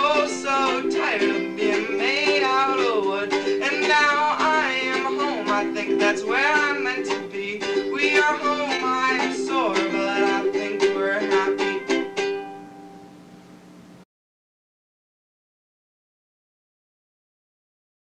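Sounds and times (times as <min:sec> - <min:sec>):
plucked string accompaniment: 0:00.0 - 0:13.6.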